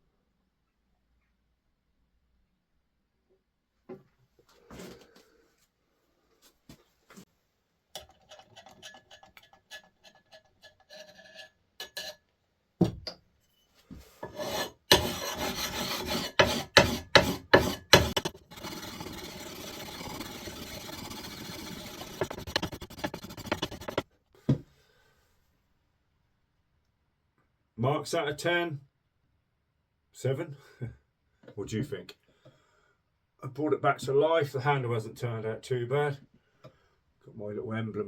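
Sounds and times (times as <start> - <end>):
filing scrapes on an axe: 8.2 - 12.2, 14.1 - 24.0.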